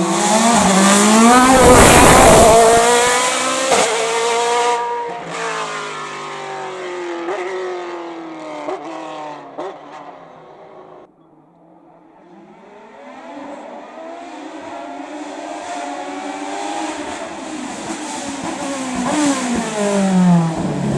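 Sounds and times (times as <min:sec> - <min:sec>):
gear changes: 0:00.0 - 0:04.0
race car engine at full throttle: 0:00.0 - 0:20.9.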